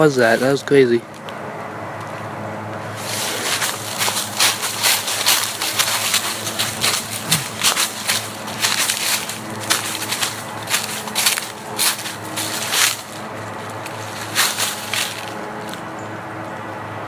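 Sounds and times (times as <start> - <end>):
steady low hum: 0.0 - 17.0
footsteps crunching on forest floor: 2.8 - 16.0.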